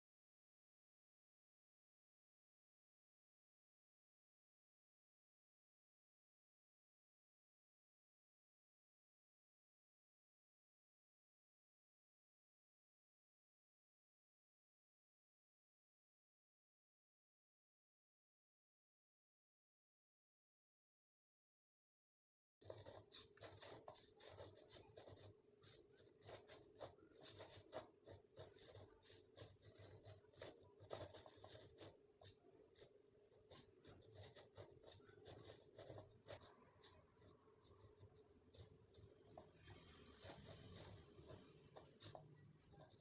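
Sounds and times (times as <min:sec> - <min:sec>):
faint irregular scratching: 0:22.6 - 0:43.0.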